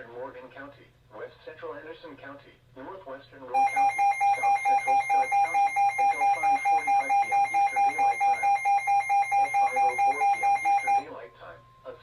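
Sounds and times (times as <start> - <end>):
rapid electronic alarm beeps: 3.6 - 11.1.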